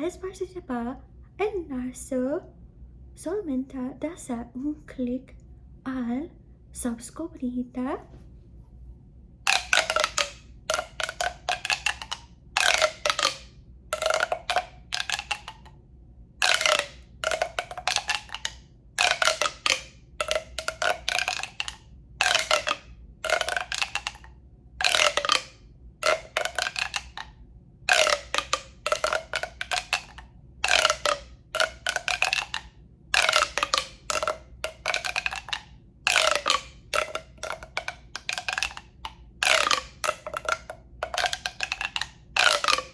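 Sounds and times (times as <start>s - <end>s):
tapping and scratching on hollow tube: 9.5s - 15.8s, 16.4s - 27.3s, 27.9s - 42.9s.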